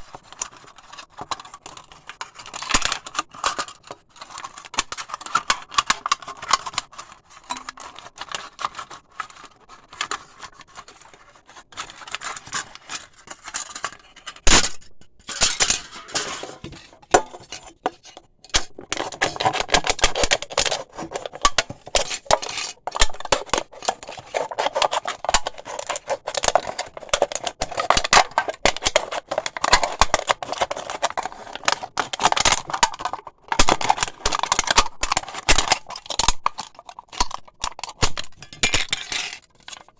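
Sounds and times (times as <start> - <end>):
blade scraping aluminium cans: 15.3 - 39.8.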